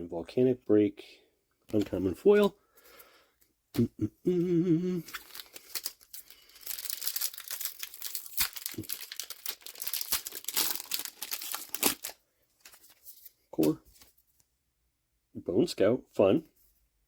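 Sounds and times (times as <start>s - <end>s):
brief wordless vocal sound: 3.8s - 5.1s
wrapper crinkling and tearing: 5.0s - 13.0s.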